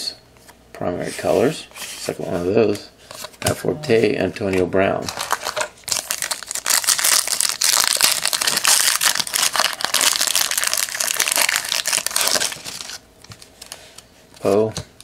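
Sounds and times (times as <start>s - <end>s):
plastic wrapper crinkling: 5.0s - 13.8s.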